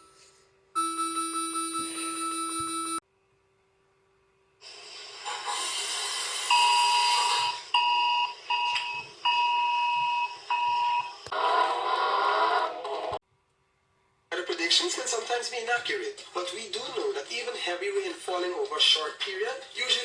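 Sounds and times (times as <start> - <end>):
alarm beeps: 0.8 - 3.0, 6.5 - 11.2.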